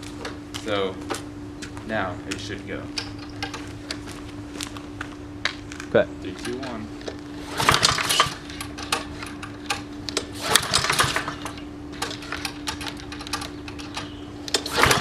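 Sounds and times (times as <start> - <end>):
lawnmower recoil starter cranking: 7.4 - 15.0.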